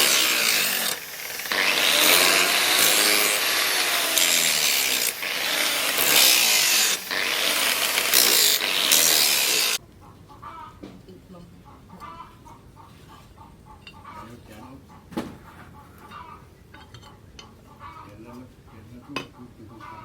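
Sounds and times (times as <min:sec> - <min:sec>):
power grinder grinding steel: 0:00.0 - 0:09.8.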